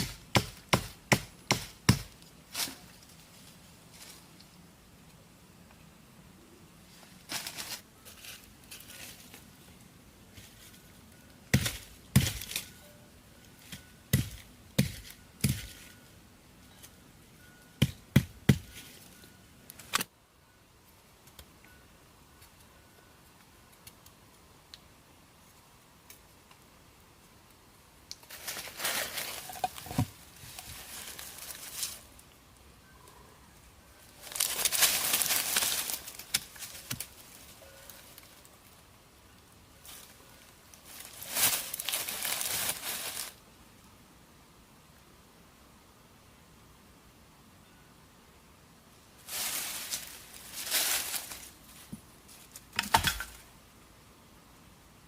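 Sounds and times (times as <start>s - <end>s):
rustling: 2.2s - 4.6s, 6.8s - 16.1s, 28.1s - 32.4s, 34.0s - 38.8s, 39.8s - 43.4s, 49.2s - 53.5s.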